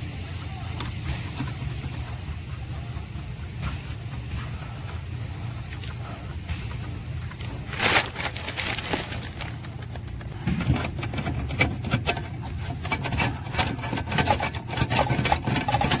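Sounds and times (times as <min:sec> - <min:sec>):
steady low hum: 0:00.0 - 0:16.0
hand tools clicking and knocking: 0:07.4 - 0:16.0.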